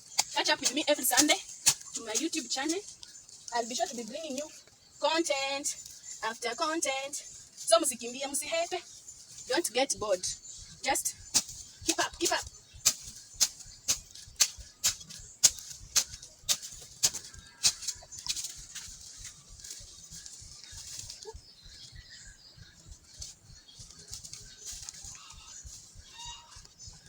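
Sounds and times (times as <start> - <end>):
hoe chopping into soil: 0.1 - 1.9, 12.8 - 18.5.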